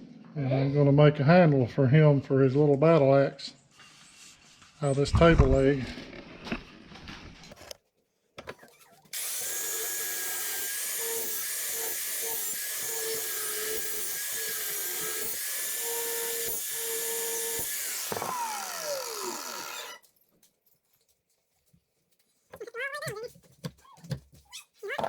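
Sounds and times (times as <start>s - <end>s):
electric power tool whining: 8.6s - 20.1s.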